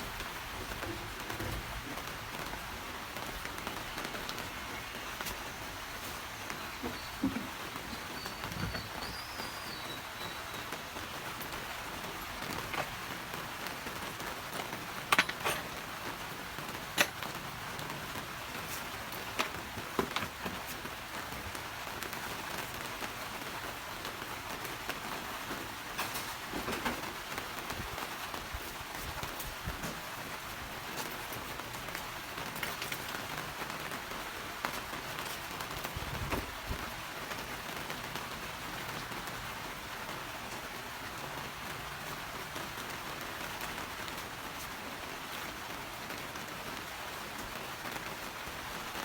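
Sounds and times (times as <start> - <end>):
rain hiss: 0.0 - 49.0.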